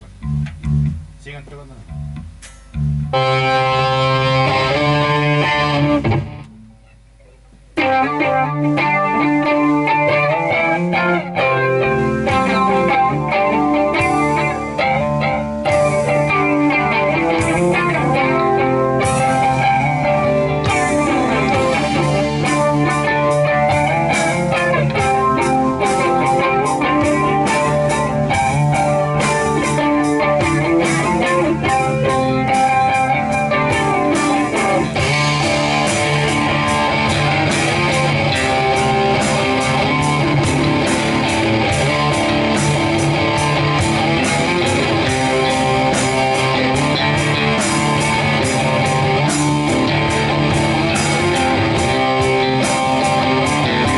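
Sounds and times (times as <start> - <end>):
drum hits: 0.0 - 3.5, 5.4 - 6.6, 12.2 - 53.9
electric guitar: 0.0 - 53.9
rock band jamming: 0.0 - 53.9.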